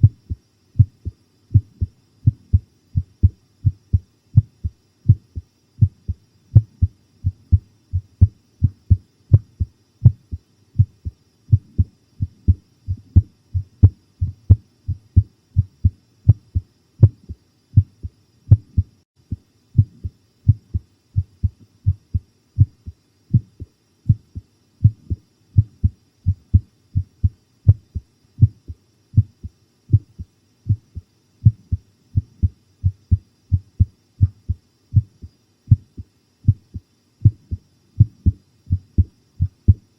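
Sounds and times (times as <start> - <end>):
heartbeat thumps: 0.0 - 39.9.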